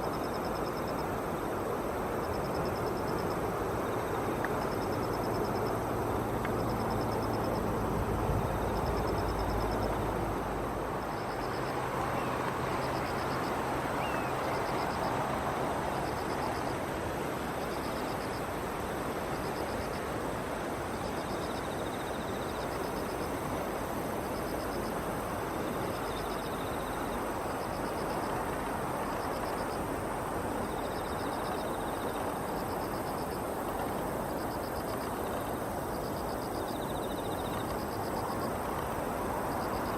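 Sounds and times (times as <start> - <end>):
insect chirping in high trills: 2.2 - 16.8
lower insect trill: 2.2 - 20.3, 29.0 - 38.7
steady rushing background noise: 2.5 - 24.4.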